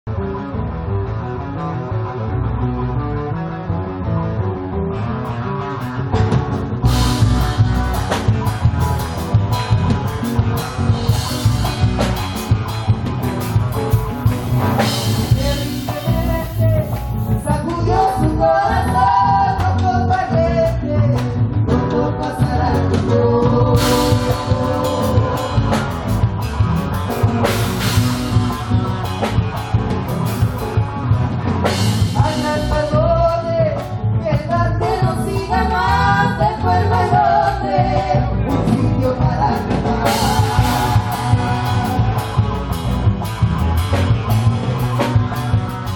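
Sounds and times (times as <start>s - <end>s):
guitar: 0.0s - 45.9s
drums with steady beat: 6.1s - 45.9s
person singing: 15.0s - 26.2s, 32.0s - 43.0s.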